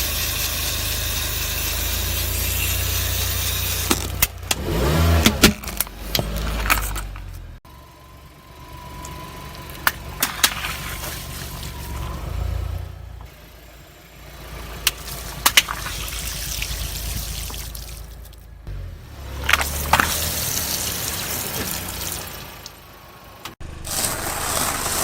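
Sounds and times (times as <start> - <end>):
car engine running low: 0.0 - 25.0
liquid splashing and trickling: 10.2 - 12.1, 14.9 - 18.5, 19.5 - 22.8.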